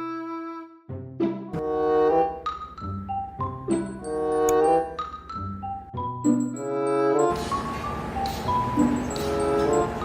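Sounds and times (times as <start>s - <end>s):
mallet percussion music: 2.3s - 10.0s.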